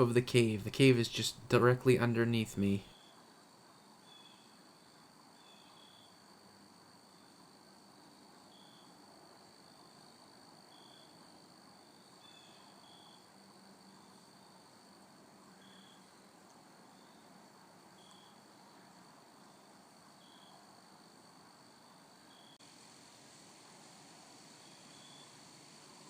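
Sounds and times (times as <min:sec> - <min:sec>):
insect high drone: 0:02.9 - 0:26.0
insect high chirps: 0:20.2 - 0:20.6, 0:24.3 - 0:25.7.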